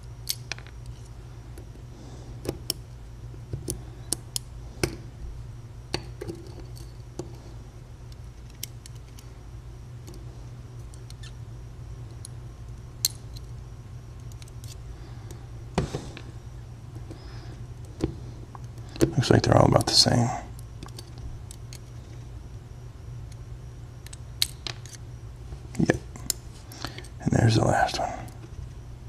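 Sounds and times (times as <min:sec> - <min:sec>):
steady low hum: 0:00.0 - 0:29.0
small metal parts clicking: 0:05.9 - 0:07.3, 0:08.1 - 0:09.3, 0:14.2 - 0:14.8.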